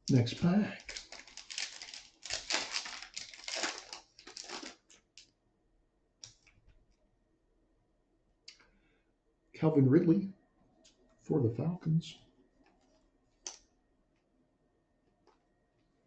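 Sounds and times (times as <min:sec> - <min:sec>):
foil wrapper tearing and crinkling: 0:00.8 - 0:05.0
faint clicks of cards handled: 0:12.6 - 0:14.3.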